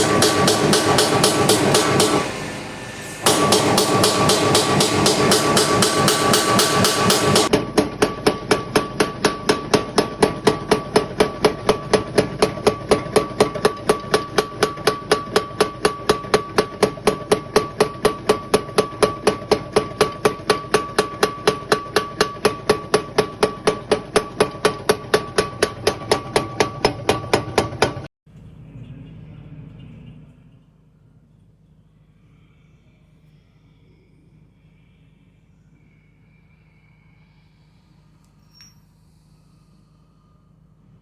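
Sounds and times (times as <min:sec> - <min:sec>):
power hammer striking metal: 0:00.0 - 0:28.1.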